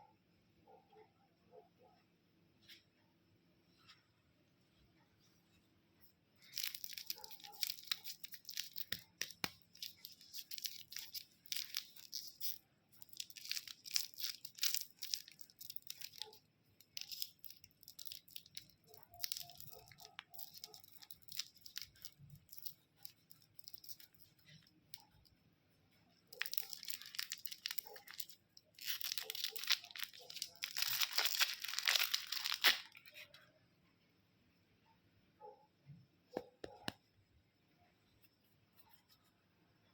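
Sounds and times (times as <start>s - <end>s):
candy wrappers crinkling: 6.4s - 25.3s, 26.1s - 33.3s.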